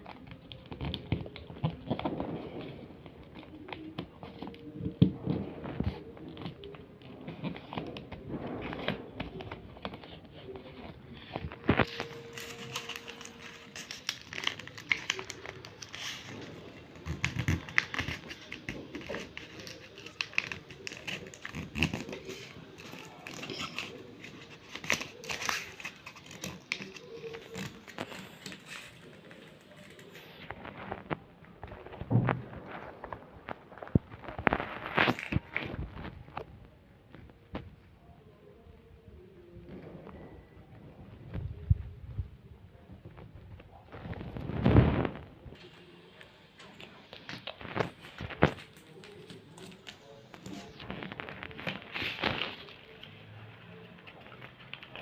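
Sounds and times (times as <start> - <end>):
paper being folded and creased: 0.0 - 36.2.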